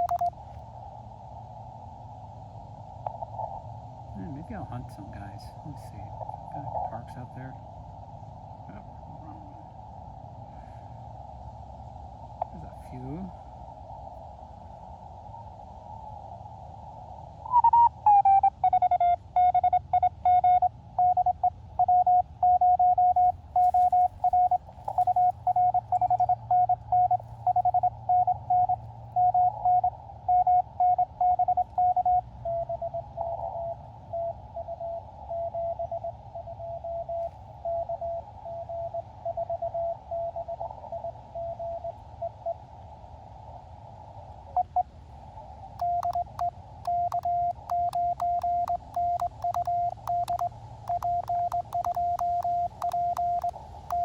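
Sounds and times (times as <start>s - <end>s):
morse code beeps: 0.0s - 0.3s, 17.8s - 32.8s, 45.8s - 54.0s
receiver hiss: 0.0s - 41.9s, 44.5s - 54.0s.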